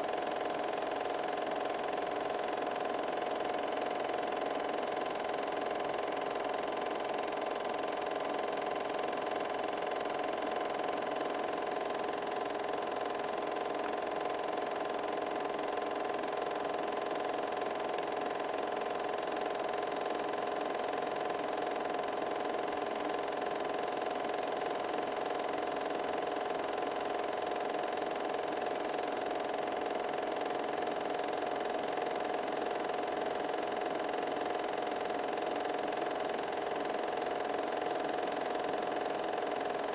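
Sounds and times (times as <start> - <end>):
film projector whirring: 0.0 - 39.9.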